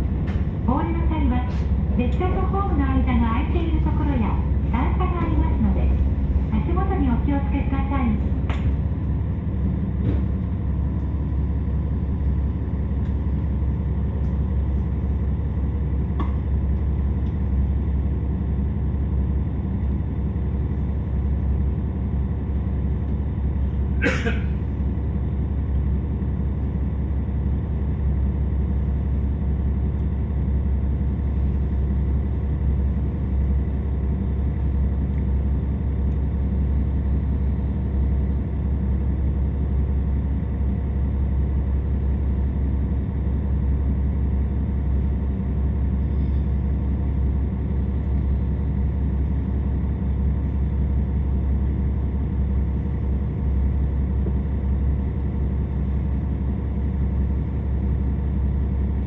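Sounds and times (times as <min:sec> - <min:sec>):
diesel railcar engine humming: 0:00.0 - 0:59.0.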